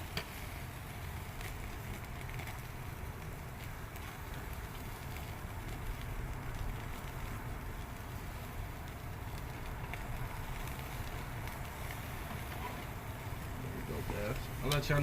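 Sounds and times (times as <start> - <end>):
fire pops: 0.0 - 15.0
grill fire crackling: 0.0 - 15.0.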